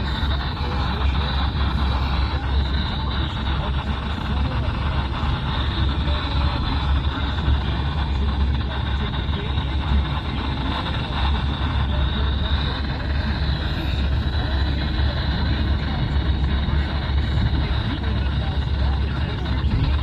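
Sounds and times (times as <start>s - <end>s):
low hum: 0.0s - 20.0s
radio static: 0.0s - 20.0s.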